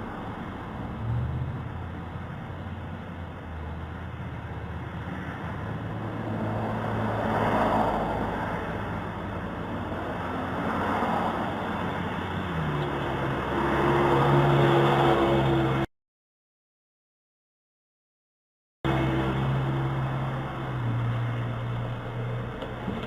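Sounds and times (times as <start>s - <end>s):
road noise: 0.0s - 15.9s, 18.8s - 23.0s
car engine humming: 18.9s - 23.0s.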